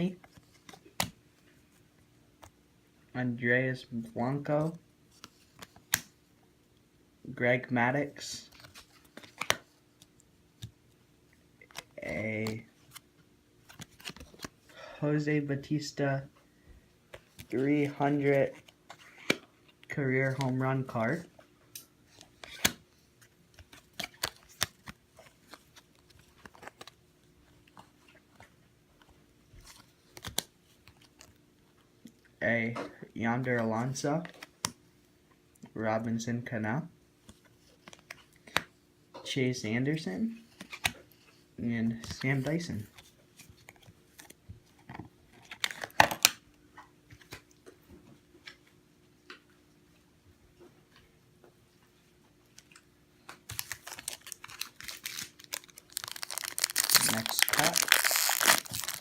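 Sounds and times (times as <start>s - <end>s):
trading cards flipping and snapping: 5.2s - 6.2s, 8.5s - 10.8s, 11.6s - 14.6s, 21.8s - 27.0s, 29.6s - 31.3s, 42.0s - 46.4s, 52.6s - 59.0s.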